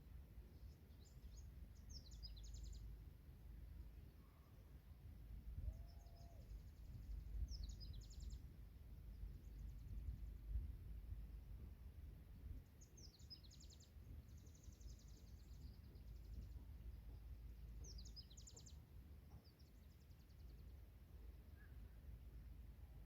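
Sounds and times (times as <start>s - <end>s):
low background rumble: 4.8s - 23.0s.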